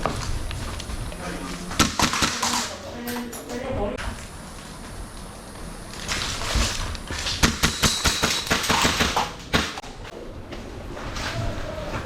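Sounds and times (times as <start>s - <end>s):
airsoft gun shots: 1.8s - 2.7s, 7.4s - 9.8s.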